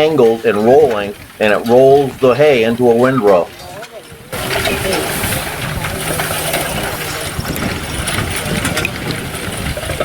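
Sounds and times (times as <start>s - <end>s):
machinery clatter: 3.3s - 10.0s
engine running: 4.3s - 10.0s.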